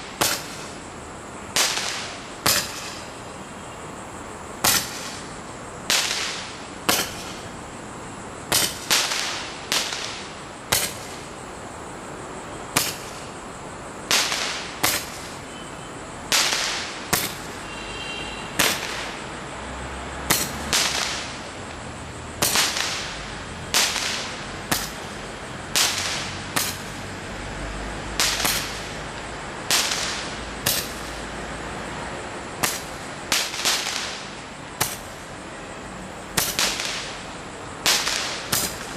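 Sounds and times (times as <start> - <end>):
fireworks cake bangs: 0.0 - 0.8, 1.5 - 3.2, 4.6 - 7.5, 8.5 - 11.3, 12.7 - 13.4, 14.1 - 15.5, 16.3 - 17.6, 18.6 - 19.2, 20.3 - 21.5, 22.4 - 27.0, 28.2 - 28.9, 29.7 - 31.2, 32.6 - 35.2, 36.4 - 37.2, 37.8 - 38.9
short hiss after bang: 0.0 - 0.8, 1.6 - 3.2, 4.6 - 7.5, 8.5 - 11.3, 12.7 - 13.4, 14.1 - 15.6, 16.3 - 19.2, 20.3 - 21.3, 23.8 - 25.1, 25.8 - 27.0, 28.2 - 28.9, 29.7 - 31.2, 32.6 - 35.2, 37.9 - 38.9.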